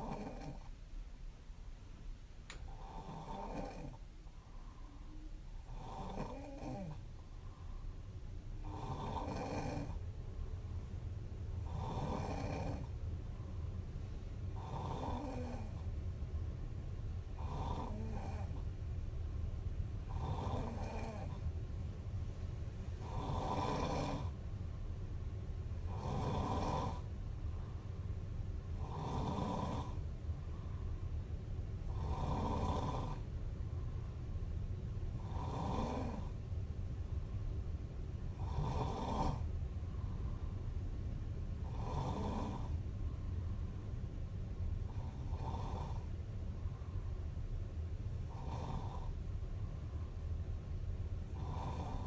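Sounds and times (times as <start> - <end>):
woman snoring: 0.0 - 0.7, 2.5 - 4.0, 5.6 - 7.0, 8.6 - 10.0, 11.6 - 12.9, 14.5 - 15.8, 17.3 - 18.6, 20.0 - 21.4, 23.0 - 24.4, 25.8 - 27.1, 28.7 - 30.0, 31.8 - 33.2, 35.1 - 36.4, 38.3 - 39.5, 41.6 - 42.8, 44.8 - 46.1, 48.2 - 49.1, 51.2 - 52.0.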